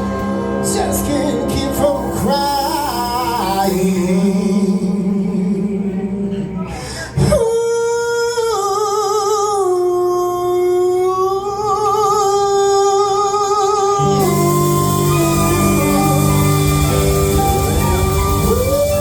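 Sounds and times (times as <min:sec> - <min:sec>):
blues band playing: 0:00.0 - 0:04.7, 0:14.0 - 0:19.0
singer holding long vibrato note: 0:09.9 - 0:19.0.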